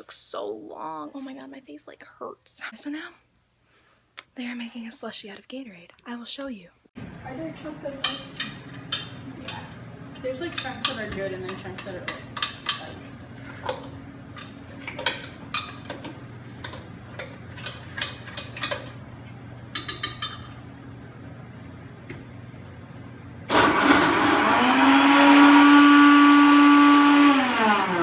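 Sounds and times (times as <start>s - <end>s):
blender blending ice: 23.5s - 28.0s.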